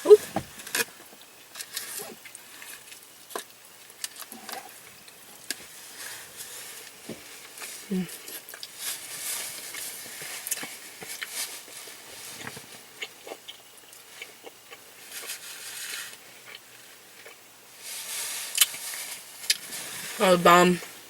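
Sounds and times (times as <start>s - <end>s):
people chewing: 9.7s - 17.4s
rustling hisses: 17.8s - 20.2s.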